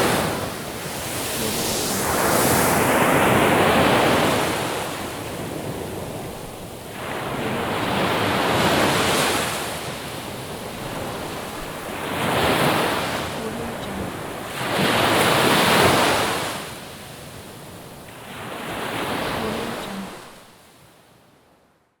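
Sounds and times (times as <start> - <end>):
sea waves breaking on shore: 0.0 - 20.8.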